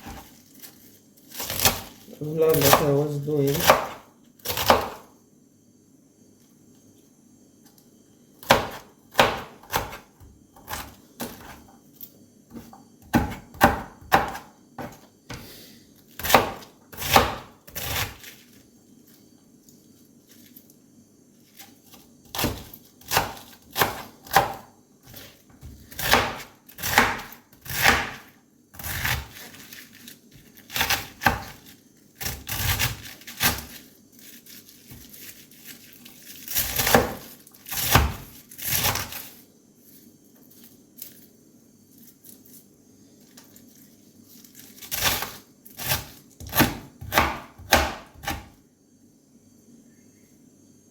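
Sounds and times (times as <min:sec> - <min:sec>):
knife chopping on cutting board: 0:02.5 - 0:05.0, 0:08.4 - 0:10.0, 0:12.5 - 0:15.4, 0:16.2 - 0:18.3, 0:22.3 - 0:29.7, 0:30.7 - 0:31.6, 0:36.6 - 0:39.2, 0:44.9 - 0:48.5.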